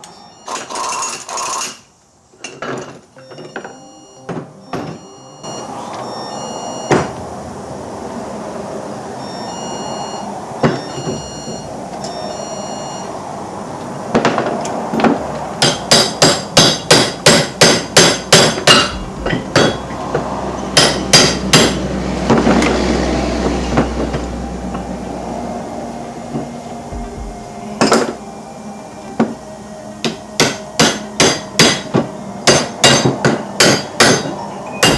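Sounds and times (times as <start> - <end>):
hammer striking steel: 15.6 - 22.8, 30.0 - 34.9.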